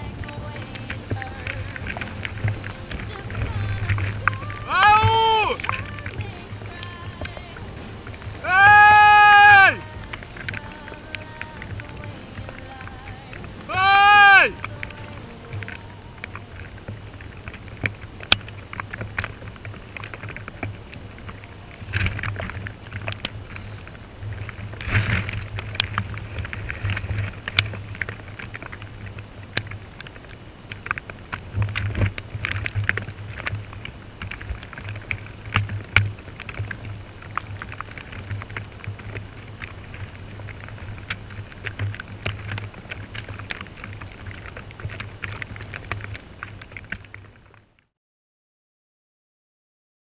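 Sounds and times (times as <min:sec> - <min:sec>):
low underwater hum: 0:00.0 - 0:47.9
sharp clicks and crackles: 0:00.0 - 0:47.9.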